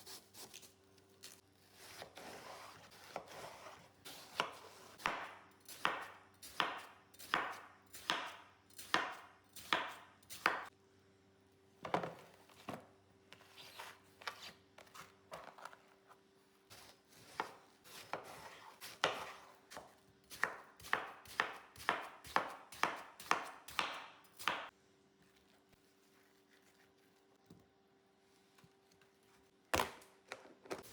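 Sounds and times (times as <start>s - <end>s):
knife cutting on chopping board: 1.8s - 10.6s.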